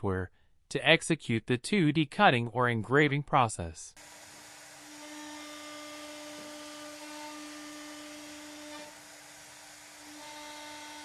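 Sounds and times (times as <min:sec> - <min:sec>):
router spindle high whine: 0:04.0 - 0:11.0.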